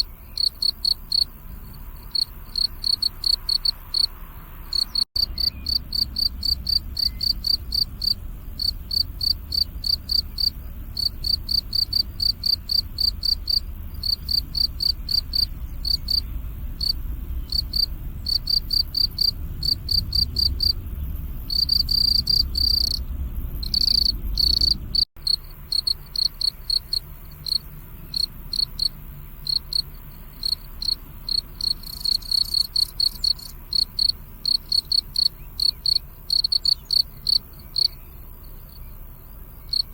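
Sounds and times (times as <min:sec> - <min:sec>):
crickets chirping: 0:00.0 - 0:39.9
low rumble: 0:03.8 - 0:25.7.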